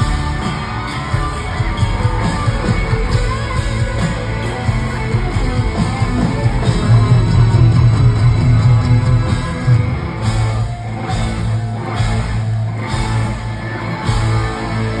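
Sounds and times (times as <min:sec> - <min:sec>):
distorted electric guitar: 0:00.0 - 0:15.0
sustained low bass: 0:03.2 - 0:15.0.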